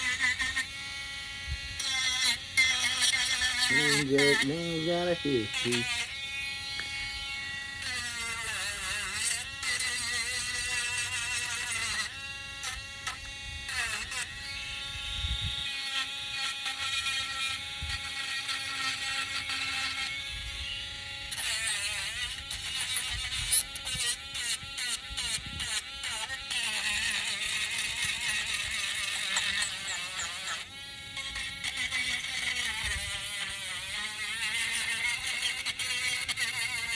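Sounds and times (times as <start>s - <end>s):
electric sander motor humming: 0.0s - 16.0s
sandpaper grinding wood: 1.8s - 6.1s, 15.7s - 20.2s, 21.4s - 36.9s.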